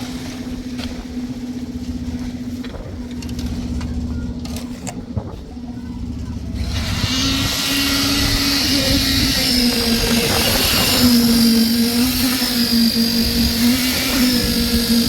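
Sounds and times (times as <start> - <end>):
machine engine running: 0.0 - 15.0
loud rushing hiss: 6.6 - 15.0.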